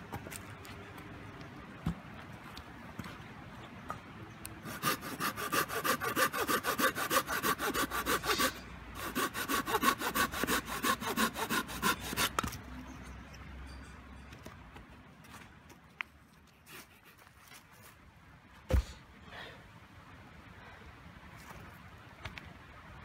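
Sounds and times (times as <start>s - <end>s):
hand saw cutting wood: 4.6s - 12.6s.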